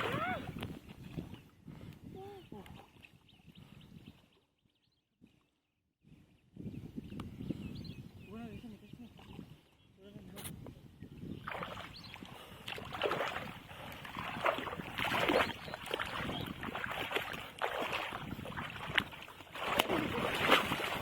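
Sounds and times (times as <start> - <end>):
water splashing and sloshing: 0.0 - 1.4, 11.4 - 21.0.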